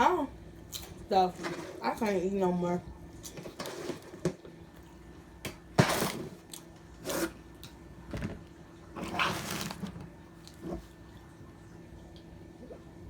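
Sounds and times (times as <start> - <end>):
rustling and handling noises: 8.1 - 11.0.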